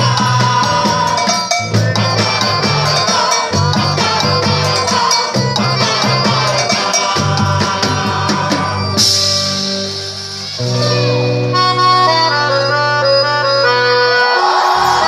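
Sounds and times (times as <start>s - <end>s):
quick percussion: 0.0s - 11.1s
accordion notes: 0.0s - 15.0s
steady bass: 0.0s - 15.0s.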